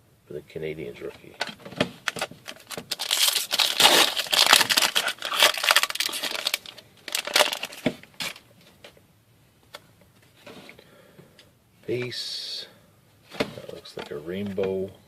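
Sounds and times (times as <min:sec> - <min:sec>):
foil wrapper crinkling and tearing: 0:02.1 - 0:08.4.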